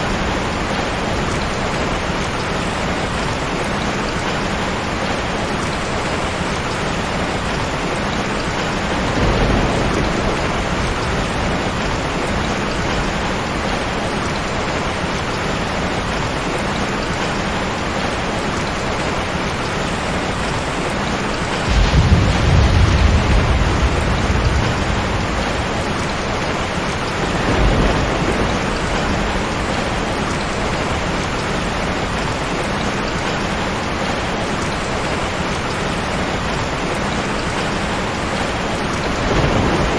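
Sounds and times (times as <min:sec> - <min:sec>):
heavy rain falling: 0:00.0 - 0:39.9
thunder rumbling: 0:07.8 - 0:16.2, 0:21.6 - 0:35.2, 0:37.4 - 0:39.9.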